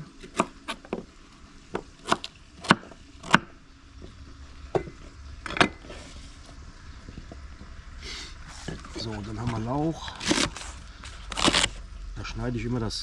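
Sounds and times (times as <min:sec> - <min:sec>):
knife chopping on cutting board: 0:00.2 - 0:01.0, 0:01.8 - 0:03.5.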